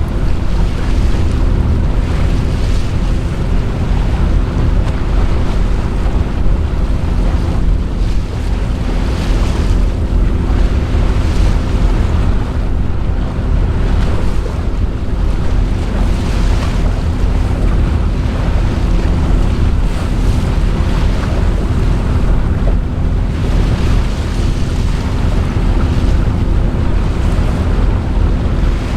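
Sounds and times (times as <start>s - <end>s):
boat engine hum: 0.0s - 28.9s
water splashing along hull: 0.0s - 28.9s
wind buffeting microphone: 0.0s - 28.9s.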